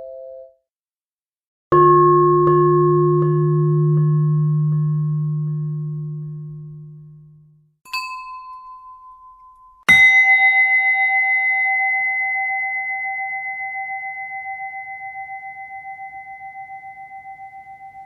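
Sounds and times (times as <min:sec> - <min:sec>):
small high bell ringing: 0:07.9 - 0:18.0.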